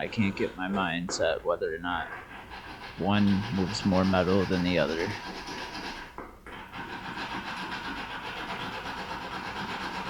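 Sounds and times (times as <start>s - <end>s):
metal file rasping on ring: 2.0s - 10.0s.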